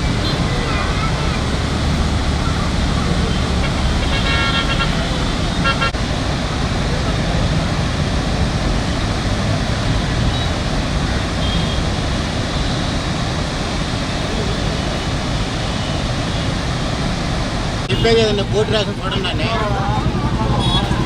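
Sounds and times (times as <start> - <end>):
floodwater rushing through gates: 0.0 - 21.0.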